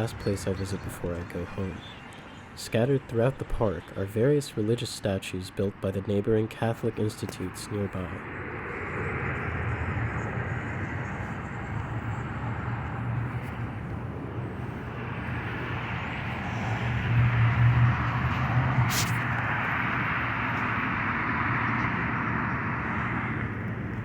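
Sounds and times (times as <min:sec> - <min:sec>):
traffic noise: 0:00.0 - 0:24.0
low hum: 0:06.7 - 0:24.0.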